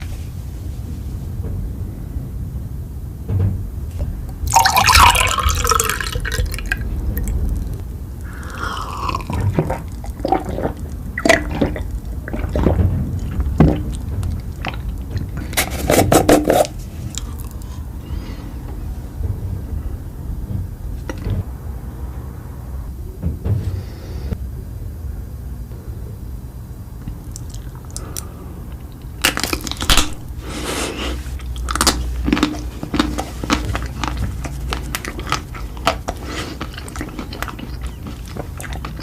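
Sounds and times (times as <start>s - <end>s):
crackling food bursts: 4.4s - 17.8s, 27.2s - 39.0s
wet mouth eating noises: 4.5s - 18.4s, 27.0s - 39.0s.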